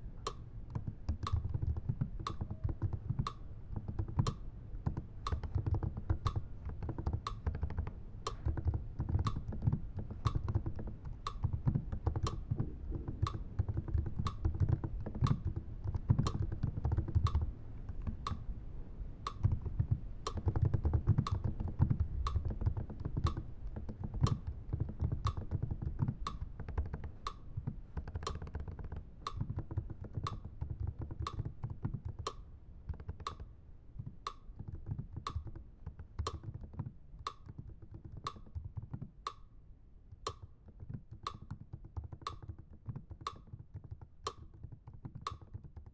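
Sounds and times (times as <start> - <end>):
keyboard keys clicking: 1.1 - 18.4, 19.4 - 33.4, 34.2 - 39.1, 40.3 - 45.9.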